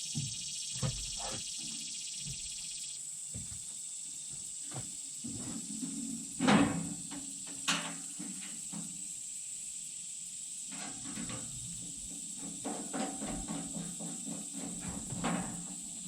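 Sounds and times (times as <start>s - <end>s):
steady high hiss: 0.0s - 12.6s.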